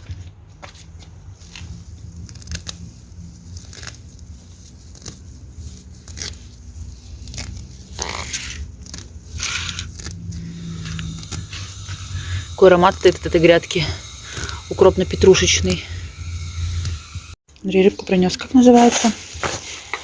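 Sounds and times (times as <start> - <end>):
leaves rustling: 1.2 - 17.4, 18.2 - 20.0
plant stems snapping: 2.2 - 13.3.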